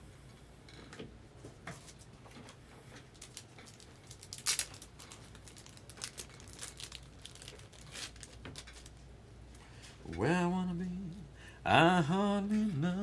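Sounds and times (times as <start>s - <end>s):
card wrappers crinkling: 3.1s - 9.0s.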